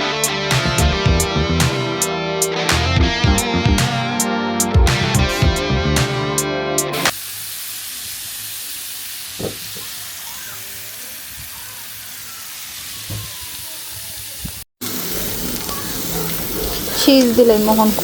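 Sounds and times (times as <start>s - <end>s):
patties sizzling on a grill: 7.1s - 18.0s.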